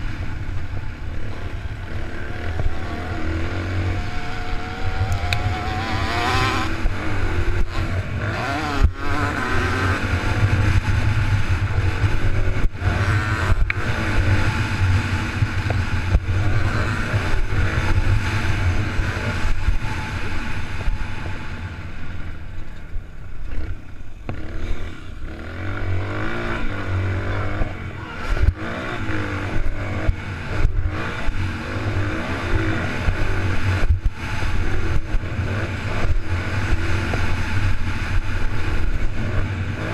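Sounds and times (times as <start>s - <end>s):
dirt bike engine revving: 0.0s - 22.4s, 23.4s - 39.9s.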